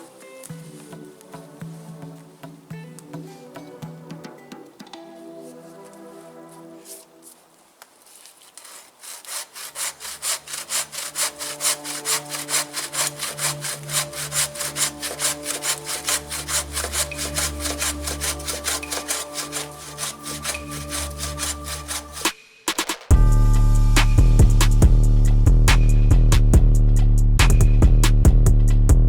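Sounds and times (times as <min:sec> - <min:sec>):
hand saw cutting wood: 0:08.1 - 0:22.8.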